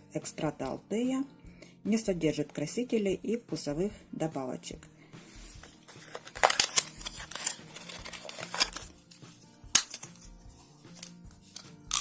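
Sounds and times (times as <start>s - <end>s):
tablet packaging crinkling: 5.5s - 9.2s.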